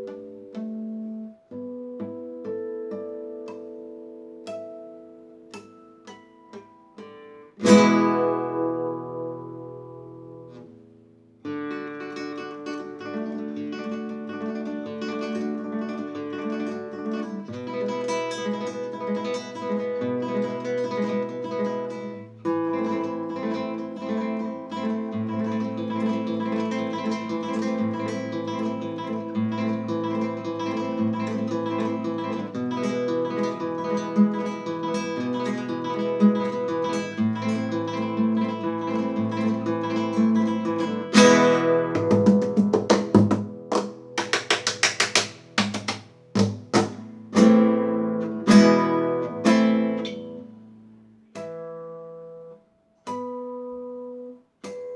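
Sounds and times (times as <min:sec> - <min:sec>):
acoustic guitar chords: 0:00.0 - 0:54.9
sharp percussive hit: 0:41.8 - 0:47.1.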